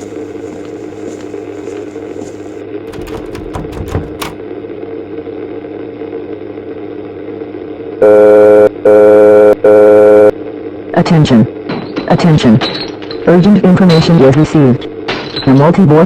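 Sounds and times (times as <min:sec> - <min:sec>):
low background drone: 0:00.0 - 0:11.7.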